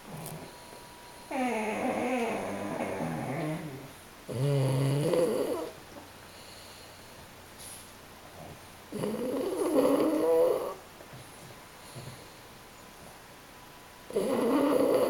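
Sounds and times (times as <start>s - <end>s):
dog snoring: 0.0s - 10.8s, 11.8s - 12.4s, 14.1s - 15.0s.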